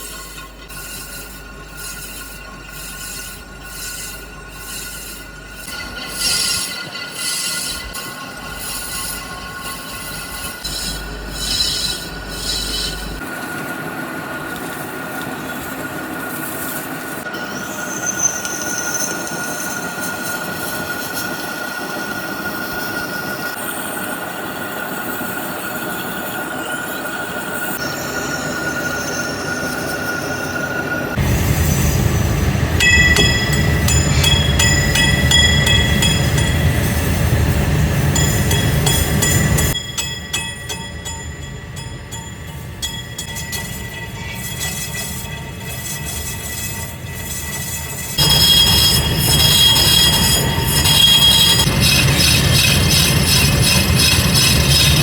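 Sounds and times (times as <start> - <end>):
machinery high-pitched squeal: 0.0 - 55.0
deep rumble with metallic ringing: 27.7 - 55.0.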